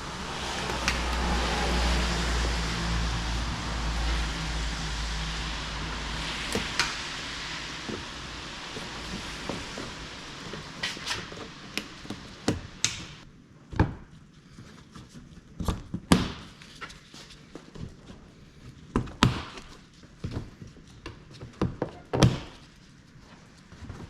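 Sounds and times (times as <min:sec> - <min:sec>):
hiss: 0:00.0 - 0:13.2.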